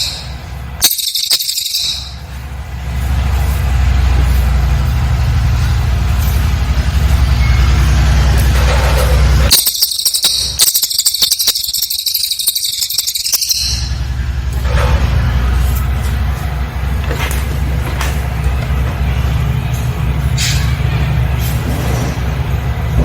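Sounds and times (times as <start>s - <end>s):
bird trilling: 0.0s - 2.4s, 9.5s - 14.2s.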